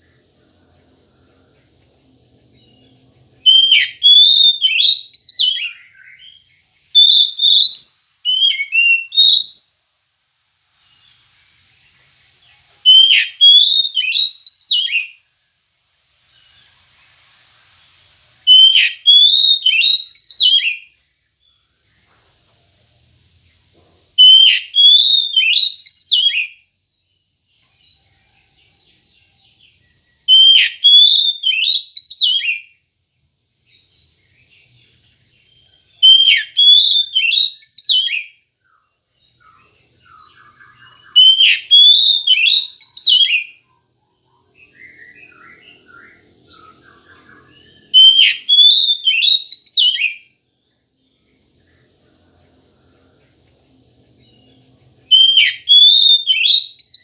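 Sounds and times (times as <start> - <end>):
soft bird chirps: 0.0 - 57.0
bird singing whistled phrase: 3.4 - 9.8, 12.9 - 15.2, 18.5 - 20.9, 24.2 - 26.6, 30.2 - 32.8, 35.5 - 43.6, 44.6 - 50.3, 55.1 - 57.0.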